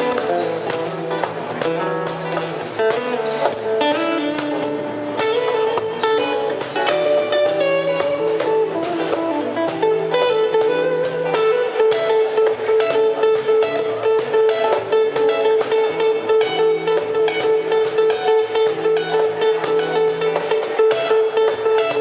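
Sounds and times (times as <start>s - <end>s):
instrumental guitar music: 0.0s - 22.0s.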